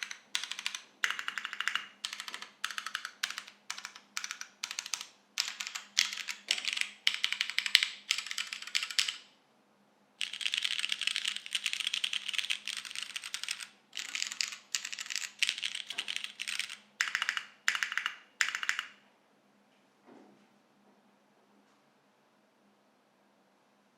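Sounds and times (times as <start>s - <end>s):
typing on mechanical keyboard: 0.0s - 9.3s, 10.2s - 19.0s.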